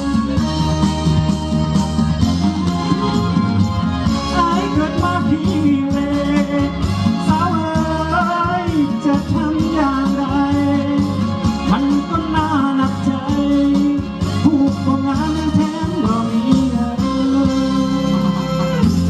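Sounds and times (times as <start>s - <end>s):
live band music: 0.0s - 19.0s
person singing: 4.0s - 19.0s.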